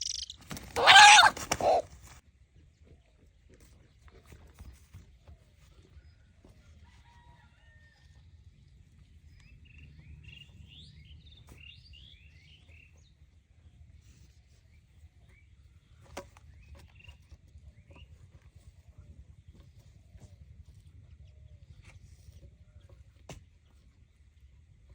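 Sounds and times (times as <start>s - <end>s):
chickens chirping: 0.0s - 1.9s.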